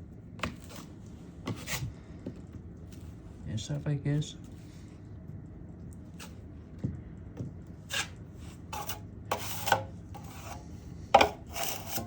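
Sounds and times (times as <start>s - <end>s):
drywall knife scraping: 7.9s - 12.0s.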